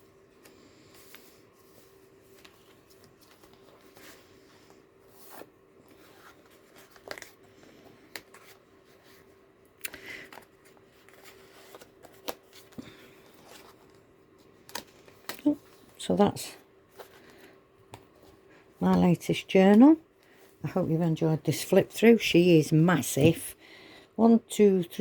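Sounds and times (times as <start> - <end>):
faint steady hum: 0.0 - 25.0
card pages rustling: 0.4 - 20.4.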